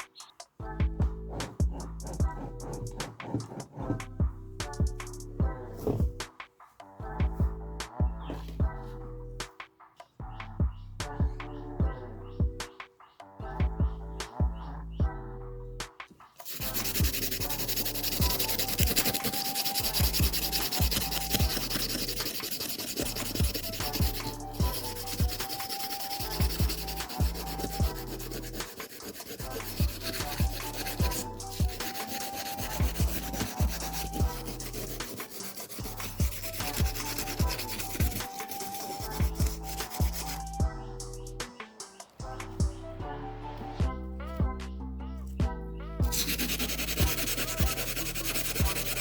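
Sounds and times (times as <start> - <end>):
background music: 0.0 - 49.0
file rubbing on saw blade teeth: 1.3 - 4.1, 16.4 - 41.3, 46.0 - 49.0.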